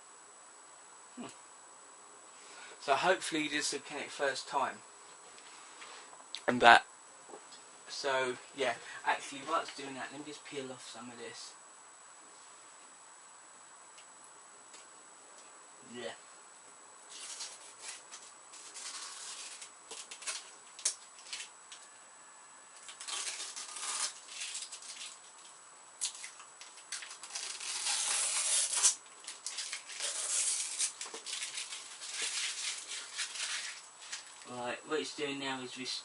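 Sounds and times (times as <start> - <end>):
thin high whine: 0.0 - 36.0
plastic film crinkling: 17.1 - 21.5, 22.8 - 34.5.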